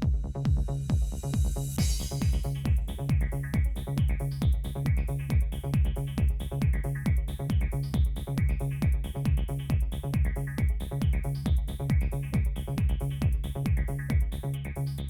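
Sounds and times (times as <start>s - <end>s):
kick drum: 0.0s - 14.7s
held bass: 0.0s - 15.0s
hi-hat ticks: 1.0s - 9.8s.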